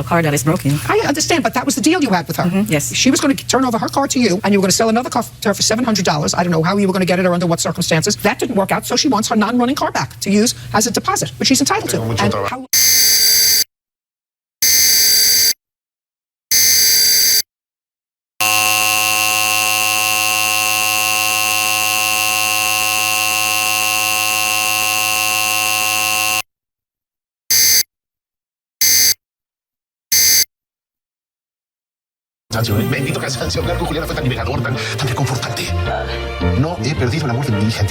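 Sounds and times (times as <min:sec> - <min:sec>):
two-tone attention signal: 0:12.8 - 0:13.6, 0:16.5 - 0:17.4, 0:18.4 - 0:26.4, 0:27.5 - 0:27.8, 0:28.8 - 0:29.2, 0:30.1 - 0:30.5
screeching digital header bursts: 0:18.4 - 0:26.4.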